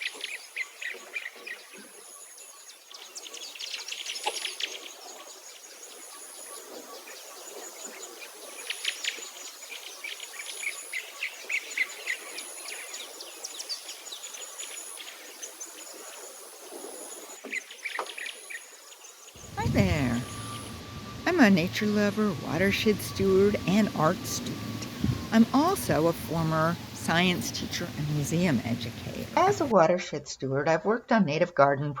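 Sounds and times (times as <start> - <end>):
birds chirping and singing: 17.5 - 29.7.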